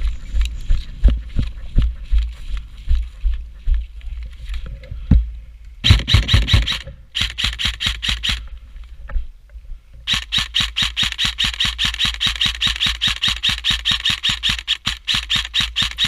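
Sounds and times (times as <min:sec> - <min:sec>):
airsoft gun firing shots: 0:05.8 - 0:08.4, 0:10.1 - 0:16.0.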